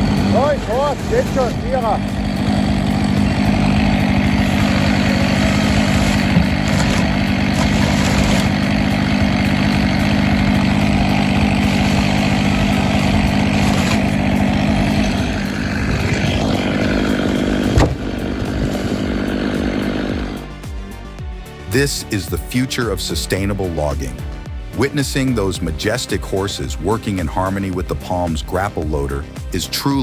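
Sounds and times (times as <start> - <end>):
engine humming: 0.0 - 22.4.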